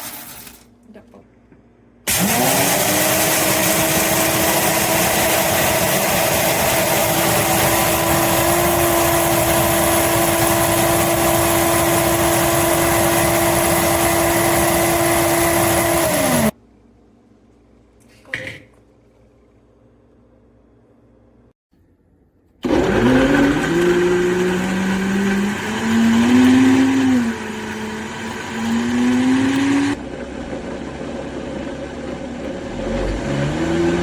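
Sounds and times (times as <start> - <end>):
blender motor whining: 2.1 - 16.6, 22.6 - 34.0.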